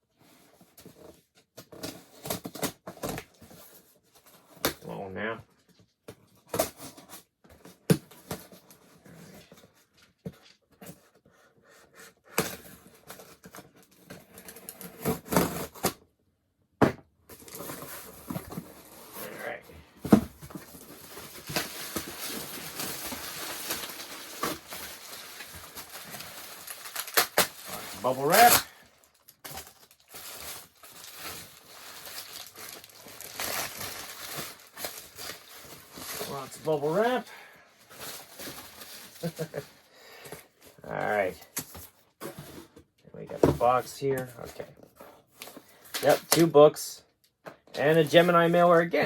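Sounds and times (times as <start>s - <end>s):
tape and cardboard tearing: 12.2s - 16.0s, 17.3s - 36.9s
bubble wrap crinkling: 17.4s - 39.8s.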